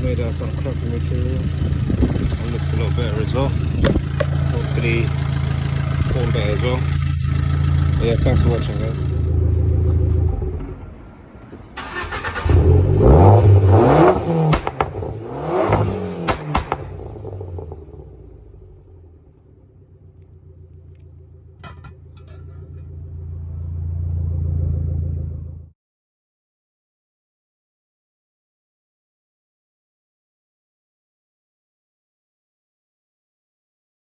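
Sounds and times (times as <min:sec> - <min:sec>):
car engine revving: 0:00.0 - 0:21.6.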